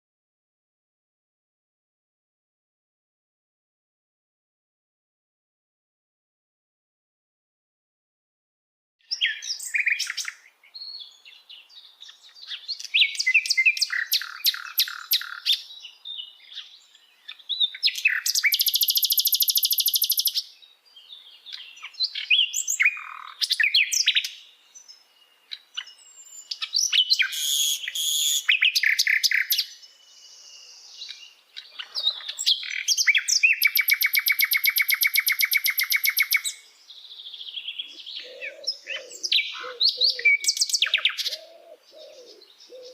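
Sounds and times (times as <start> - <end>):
songbird chirps and whistles: 9.0 - 42.9.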